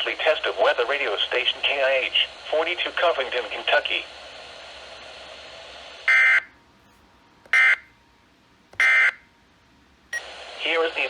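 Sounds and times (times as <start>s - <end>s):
radio hiss: 0.0s - 6.4s, 10.2s - 11.0s
shrill electronic buzzes: 8.8s - 9.2s.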